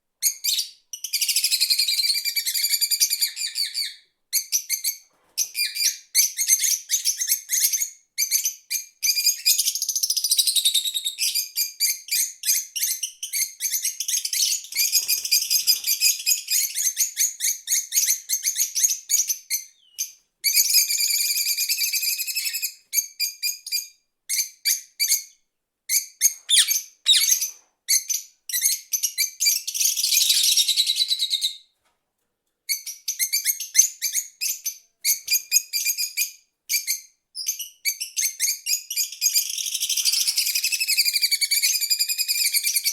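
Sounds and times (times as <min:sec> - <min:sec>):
birds chirping and warbling: 0:12.8 - 0:22.8, 0:26.2 - 0:28.0, 0:29.4 - 0:31.6.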